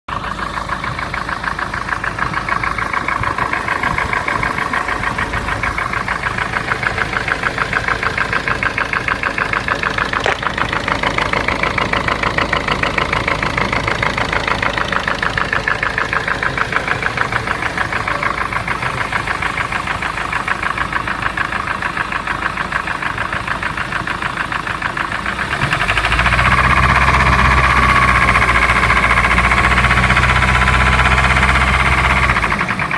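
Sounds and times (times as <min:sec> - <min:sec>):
diesel engine running: 0:00.1 - 0:32.9
rhythmic engine knock: 0:00.1 - 0:32.9.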